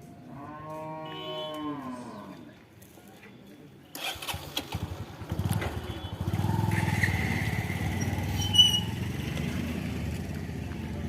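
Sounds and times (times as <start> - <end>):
high squeak: 6.8 - 9.1.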